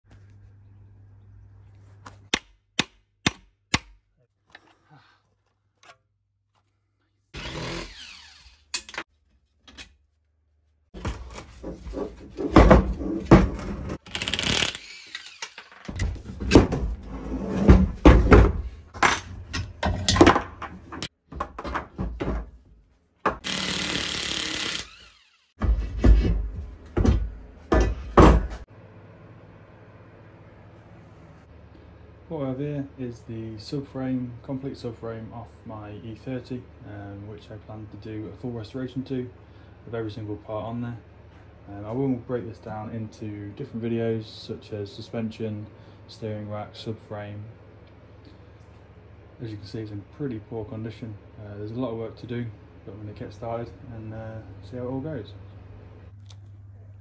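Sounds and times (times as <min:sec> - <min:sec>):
power tool running: 0:07.4 - 0:08.8, 0:14.0 - 0:15.7, 0:23.4 - 0:25.6.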